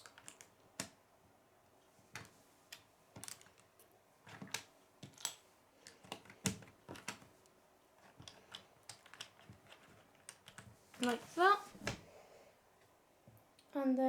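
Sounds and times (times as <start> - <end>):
plastic bricks clicking: 0.0 - 1.0, 2.1 - 7.3, 8.0 - 11.3.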